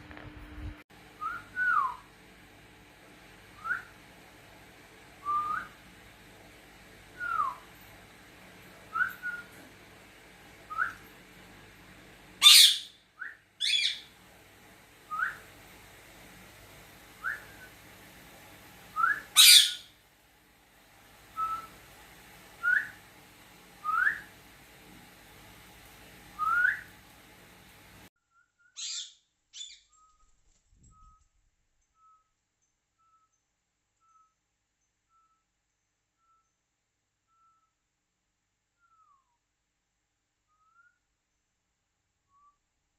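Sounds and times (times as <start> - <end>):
parrots calling shrilly: 12.4 - 13.0, 13.6 - 14.1, 19.3 - 19.9.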